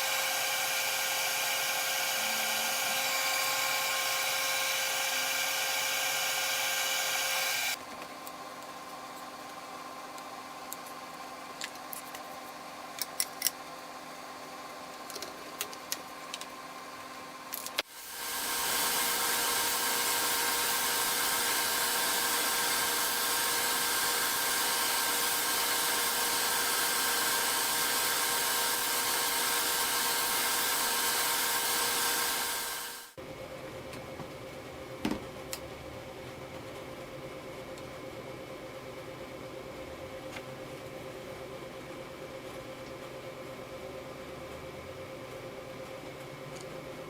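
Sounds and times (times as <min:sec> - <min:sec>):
electric power tool running: 0:00.0 - 0:07.8, 0:17.8 - 0:33.2.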